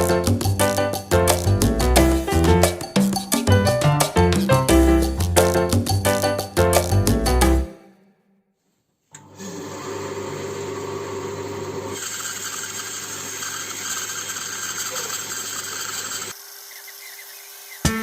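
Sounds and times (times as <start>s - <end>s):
woodworking power tool running: 9.2s - 17.9s.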